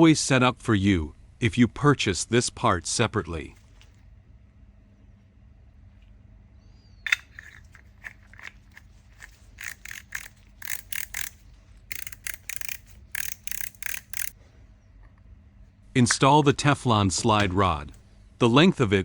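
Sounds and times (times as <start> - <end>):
metal parts clicking and clinking: 7.1 - 14.4.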